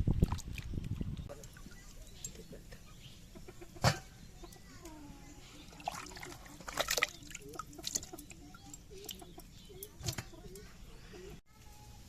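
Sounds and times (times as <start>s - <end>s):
water splashing and dripping: 0.0s - 2.4s, 5.6s - 10.3s.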